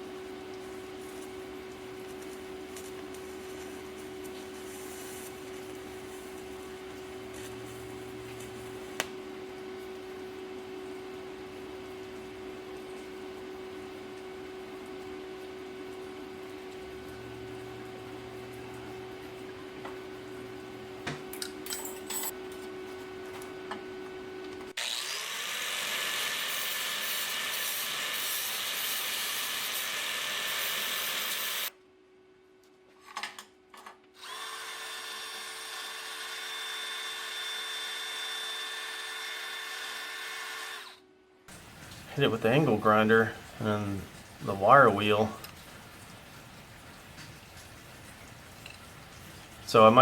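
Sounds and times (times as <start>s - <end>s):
electric angle grinder grinding steel: 24.8s - 31.7s, 34.2s - 41.0s.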